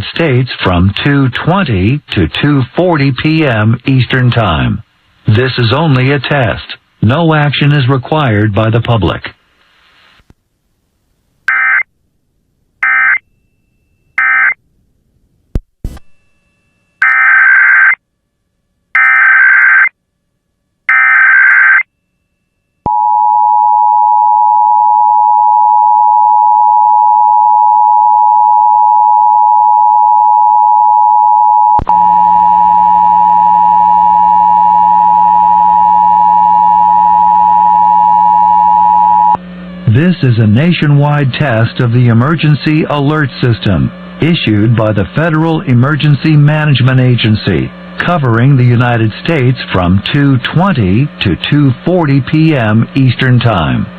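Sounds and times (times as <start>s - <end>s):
low hum: 21.9s - 53.9s.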